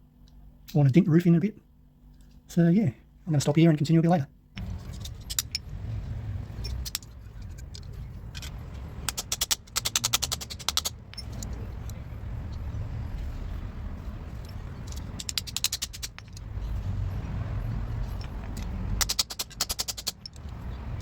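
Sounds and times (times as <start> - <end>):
low hum: 4.6 - 21.0
rapid sharp clicks: 6.6 - 12.6, 14.4 - 16.5, 18.2 - 20.6.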